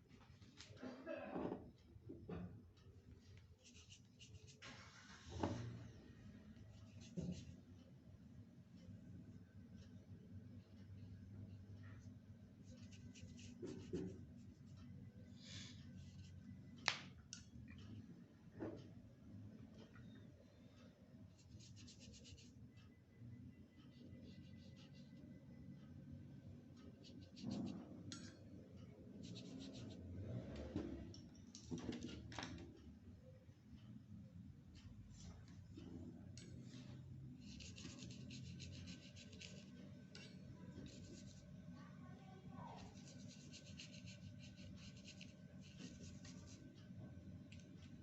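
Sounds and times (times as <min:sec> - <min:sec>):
paintbrush strokes on paper: 0:03.6 - 0:05.7, 0:12.6 - 0:14.8, 0:21.4 - 0:22.5, 0:29.2 - 0:30.1, 0:36.7 - 0:39.8, 0:40.7 - 0:41.5, 0:42.7 - 0:46.7.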